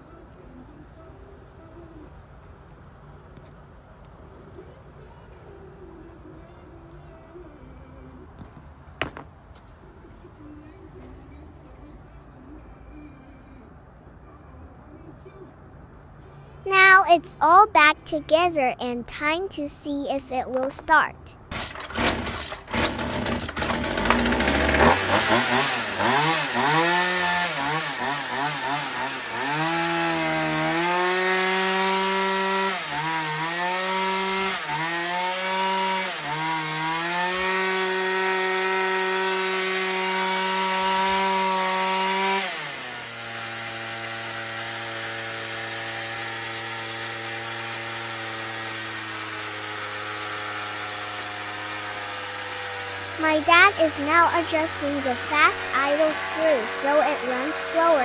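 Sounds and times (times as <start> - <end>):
chainsaw engine revving: 21.5 - 58.0.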